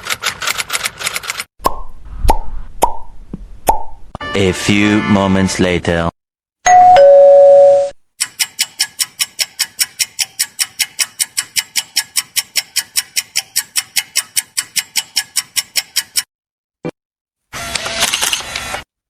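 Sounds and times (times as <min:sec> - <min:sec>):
two-note doorbell chime: 0:06.7 - 0:08.0.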